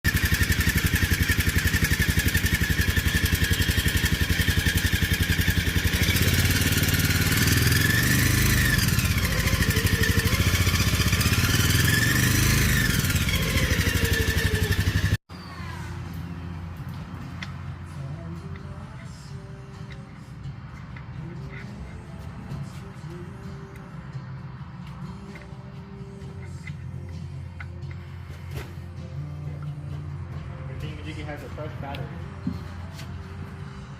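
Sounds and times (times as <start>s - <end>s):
engine revving with whine: 0.1s - 15.2s.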